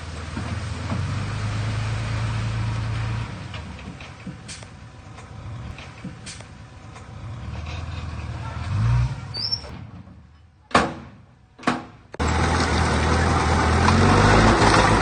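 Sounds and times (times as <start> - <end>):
diesel engine of heavy machinery: 0.0 - 10.3, 12.2 - 15.0
metal clanks and knocks: 3.5 - 8.6, 9.6 - 12.4.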